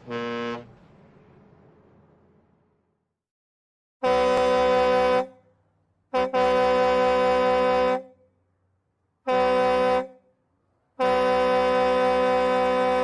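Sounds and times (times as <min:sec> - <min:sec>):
truck air horn blasts: 0:00.0 - 0:00.8, 0:04.0 - 0:05.5, 0:06.1 - 0:08.3, 0:09.2 - 0:10.3, 0:11.0 - 0:13.0.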